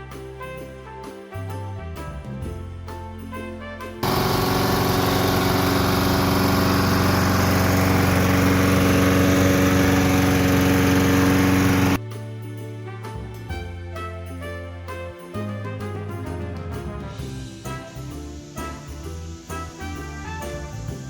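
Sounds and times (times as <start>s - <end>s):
music: 0.0s - 6.4s, 10.2s - 21.0s
lawn mower engine running: 4.0s - 12.0s.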